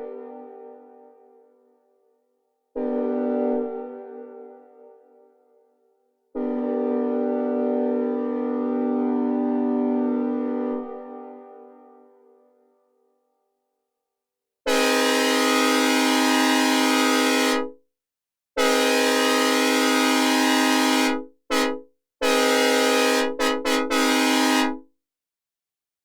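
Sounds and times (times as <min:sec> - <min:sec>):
synthesized train horn blasts: 0:02.8 - 0:04.4, 0:06.4 - 0:11.4, 0:14.7 - 0:17.7, 0:18.6 - 0:24.8.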